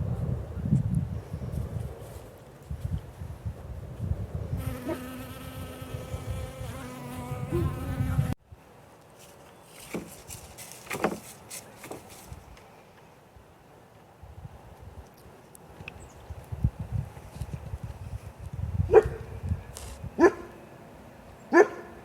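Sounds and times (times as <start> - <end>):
bee buzzing in flight: 4.6 - 8.4.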